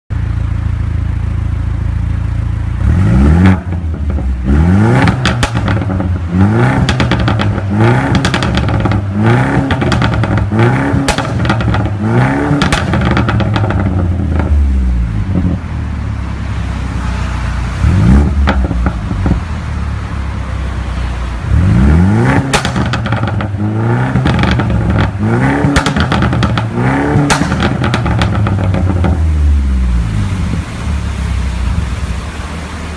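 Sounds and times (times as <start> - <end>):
car engine revving: 0.3 - 32.9
exhaust crackles and pops: 3.3 - 15.6, 18.0 - 19.6, 21.8 - 32.5.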